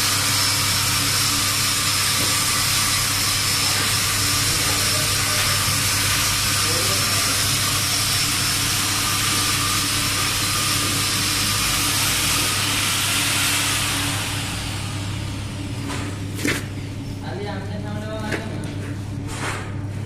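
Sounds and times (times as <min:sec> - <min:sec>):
welding arc hissing: 0:00.0 - 0:15.8.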